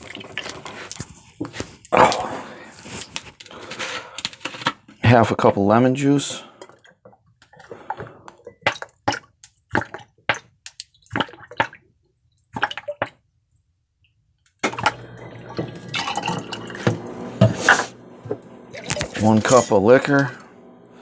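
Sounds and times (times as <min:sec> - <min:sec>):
liquid dripping and clicking: 0:06.6 - 0:13.2
juice pouring into glass jar: 0:14.9 - 0:17.1.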